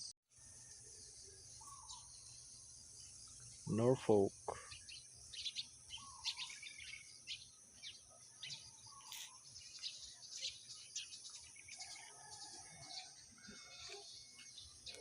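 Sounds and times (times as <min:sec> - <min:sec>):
insect chirps: 0:00.3 - 0:15.0
insects droning: 0:00.3 - 0:15.0.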